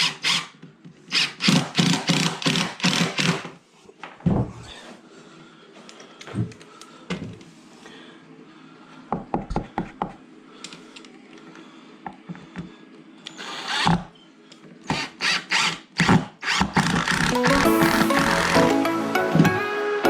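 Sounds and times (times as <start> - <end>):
cordless drill driving screws: 1.1 - 3.4, 13.3 - 14.0, 14.9 - 15.8, 16.4 - 18.7.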